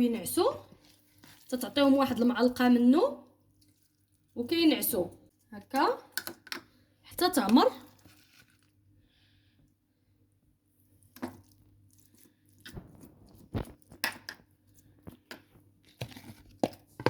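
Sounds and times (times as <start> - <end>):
soft squelches of sticky mixture: 0.0 - 17.0.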